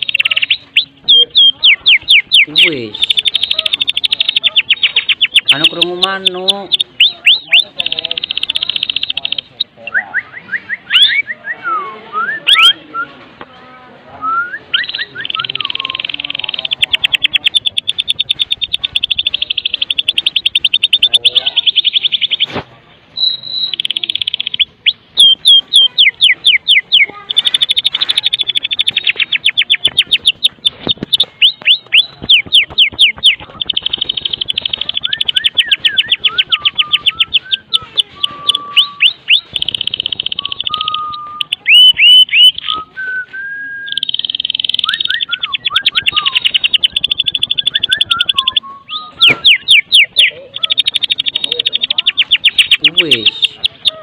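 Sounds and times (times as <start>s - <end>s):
bird downward-sweeping notes: 14.7s - 54.0s
bird rattling calls: 23.2s - 42.7s, 43.9s - 54.0s.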